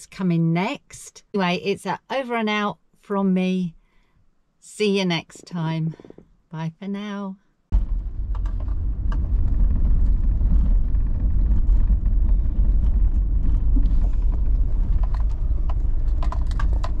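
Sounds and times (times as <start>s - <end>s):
car rumbling: 7.7s - 17.0s.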